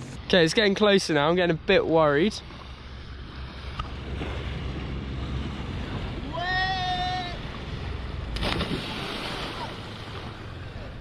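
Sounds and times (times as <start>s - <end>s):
water noise: 0.0s - 11.0s
wind: 0.0s - 11.0s
person screaming: 6.3s - 7.4s.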